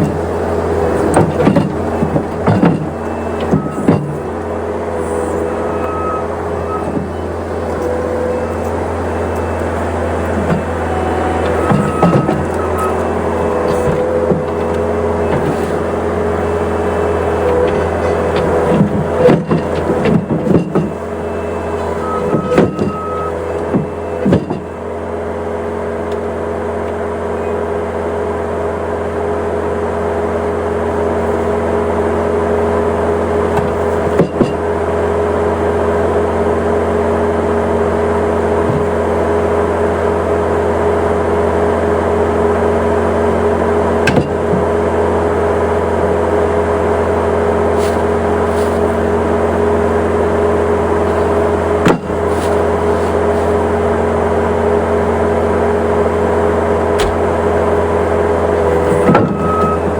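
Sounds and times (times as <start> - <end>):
knocks and clanks: 0.0 - 4.4, 5.4 - 16.0, 17.0 - 21.1, 21.7 - 24.8, 33.5 - 34.7, 38.6 - 39.2, 44.0 - 44.8, 51.0 - 53.6, 57.0 - 57.4, 58.8 - 59.8
engine running steadily: 0.0 - 59.9.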